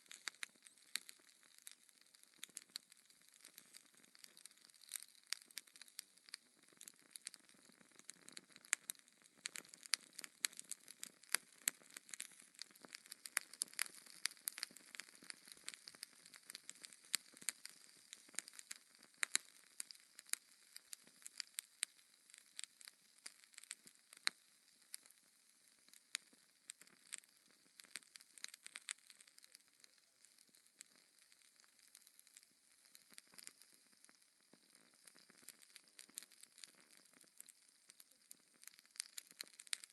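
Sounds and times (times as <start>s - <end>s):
wood fire crackling and popping: 0.0s - 39.9s
faint fire hiss: 9.4s - 39.9s.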